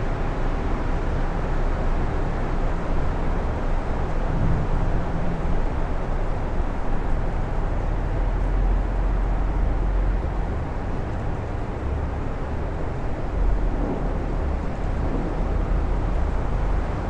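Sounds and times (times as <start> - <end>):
strong wind blowing: 1.6 - 8.0, 8.8 - 17.0.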